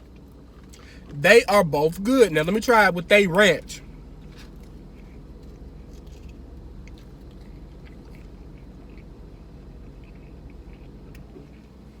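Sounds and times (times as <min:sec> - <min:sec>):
person chewing food: 0:00.0 - 0:01.1, 0:04.2 - 0:12.0
low background hum: 0:00.0 - 0:12.0.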